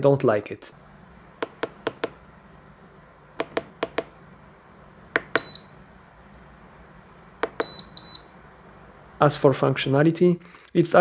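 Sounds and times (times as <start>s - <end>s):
plastic buttons clicking: 3.4s - 4.1s.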